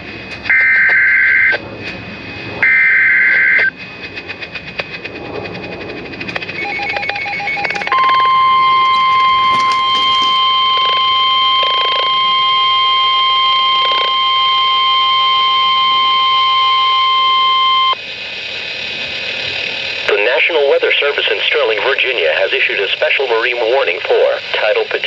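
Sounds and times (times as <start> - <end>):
steady alarm tone: 0.5 - 1.6, 2.6 - 3.8, 5.8 - 18.0.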